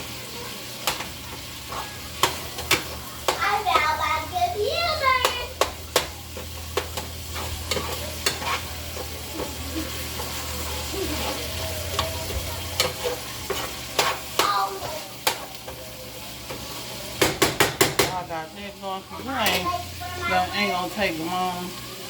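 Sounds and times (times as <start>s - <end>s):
meat sizzling in a pan: 0.0s - 22.0s
utensil clicking and scraping pan: 0.8s - 3.9s, 5.2s - 10.6s, 11.2s - 15.8s.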